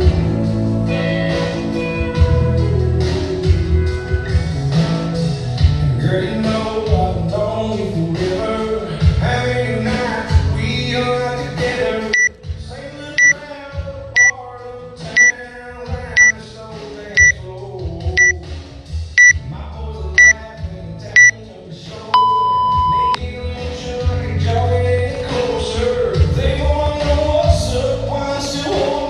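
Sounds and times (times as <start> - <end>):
music: 0.0 - 29.0
long lower beep: 22.2 - 23.2
short high timer beeps: 22.2 - 23.2.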